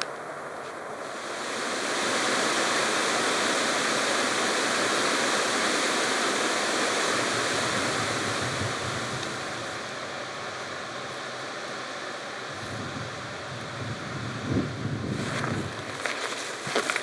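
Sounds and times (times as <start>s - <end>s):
rushing stream water: 1.0s - 9.8s.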